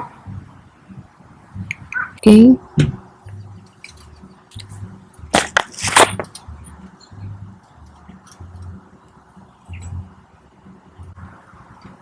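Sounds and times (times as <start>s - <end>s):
faint low pulsing hum: 0.0s - 12.0s
packaging crackling and clicking: 5.3s - 6.5s.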